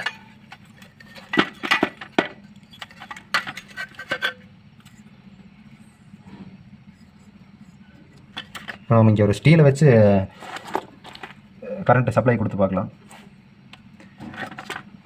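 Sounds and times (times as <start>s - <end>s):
metal parts clinking on bench: 0.0s - 4.4s.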